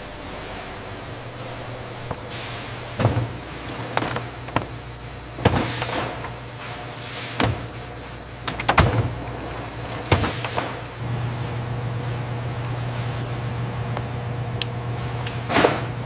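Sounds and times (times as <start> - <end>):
factory machinery hum: 0.0 - 16.0.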